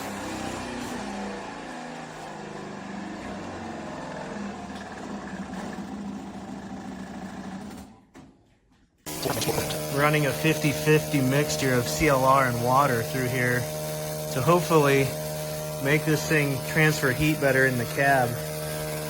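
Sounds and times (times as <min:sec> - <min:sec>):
motor humming: 0:09.1 - 0:10.3.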